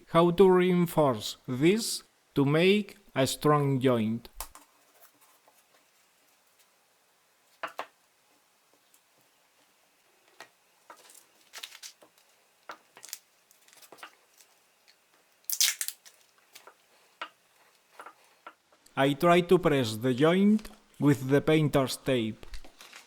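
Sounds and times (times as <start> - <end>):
tape and wood crinkling: 10.3 - 18.4, 22.4 - 23.0
tape ripping: 11.0 - 12.1, 13.0 - 14.6, 15.4 - 16.7.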